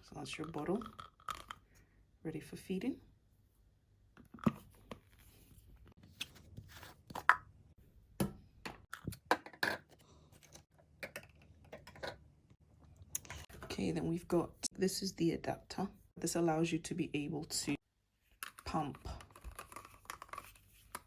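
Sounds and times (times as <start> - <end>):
plastic parts clicking and tapping: 8.6 - 12.2.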